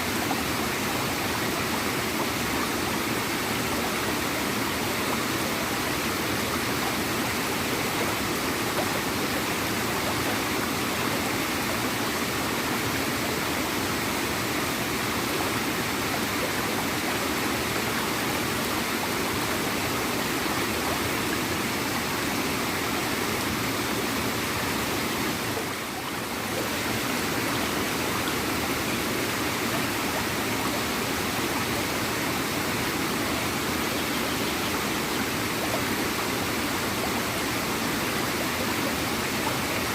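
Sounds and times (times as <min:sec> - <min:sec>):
small waterfall gurgling: 0:00.0 - 0:39.9.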